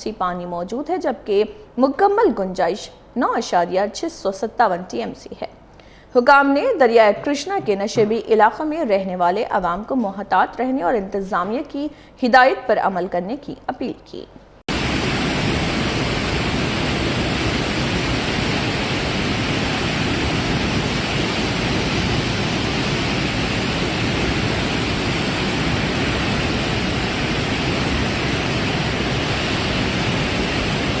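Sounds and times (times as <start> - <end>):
rushing floodwater: 14.7 - 31.0.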